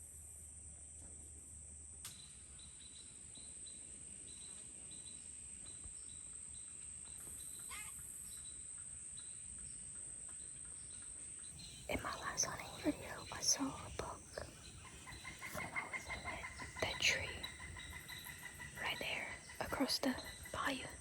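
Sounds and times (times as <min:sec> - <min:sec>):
insects buzzing: 0:11.6 - 0:21.0
wavering bird call: 0:11.9 - 0:21.0.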